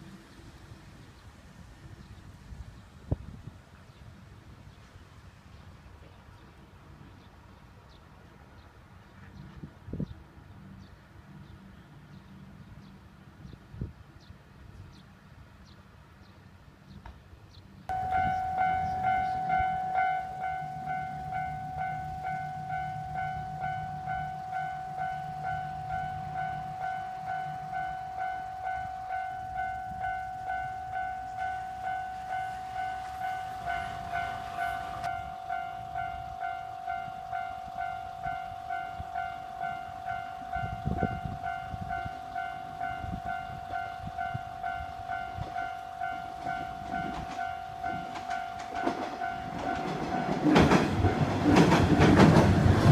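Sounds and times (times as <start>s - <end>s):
level crossing electronic bell: 17.9s - 50.1s.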